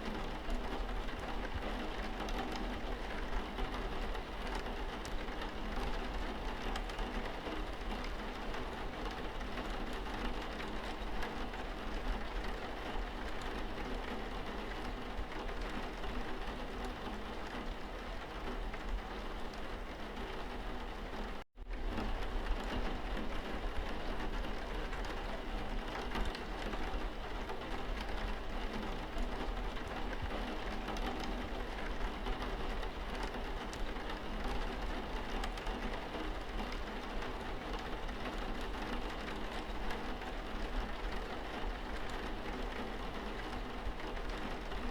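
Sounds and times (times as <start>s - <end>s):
steady rain: 0.0s - 44.9s.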